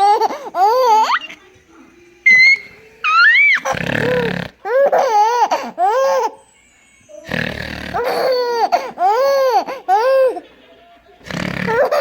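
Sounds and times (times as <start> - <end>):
baby laughing: 0.0 - 1.4, 2.3 - 6.5, 7.9 - 10.6, 11.7 - 12.0.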